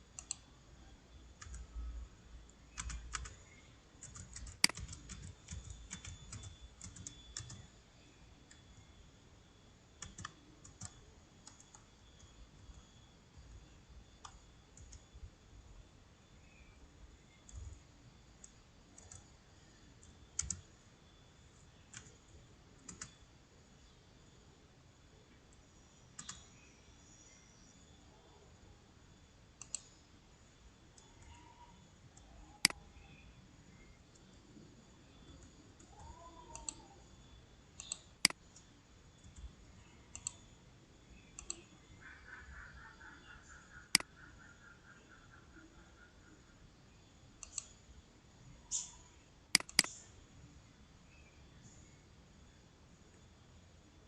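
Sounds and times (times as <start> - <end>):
keyboard keys clicking: 2.7 - 3.4, 4.0 - 7.6, 10.0 - 11.8, 20.4 - 20.6, 49.6 - 50.0.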